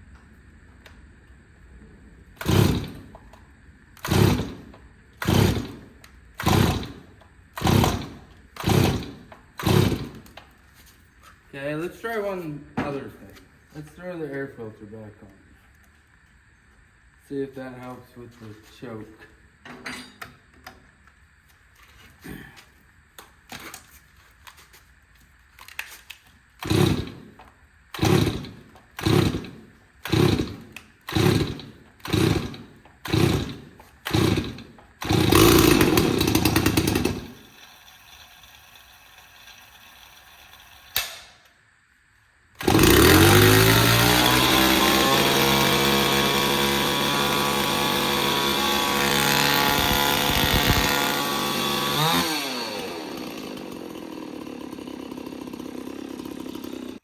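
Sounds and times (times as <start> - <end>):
chainsaw engine running: 2.4 - 3.1, 4.0 - 10.3, 26.6 - 41.1, 42.6 - 57.0
chainsaw starter rope pulls: 2.4 - 3.2, 4.0 - 10.9, 25.6 - 41.1, 42.6 - 57.0.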